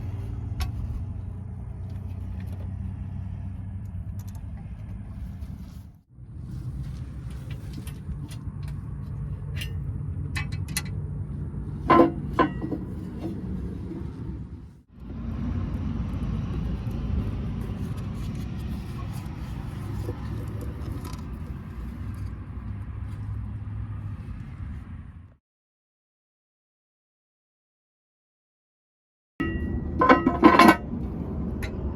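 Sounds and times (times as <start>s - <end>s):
tractor diesel engine running: 0.0s - 25.4s, 29.4s - 31.9s
loud metallic clanks: 11.8s - 13.4s.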